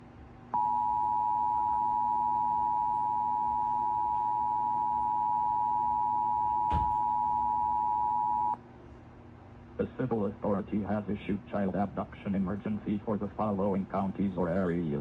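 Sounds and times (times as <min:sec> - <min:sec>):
two-tone electronic alert drone: 0:00.6 - 0:08.6.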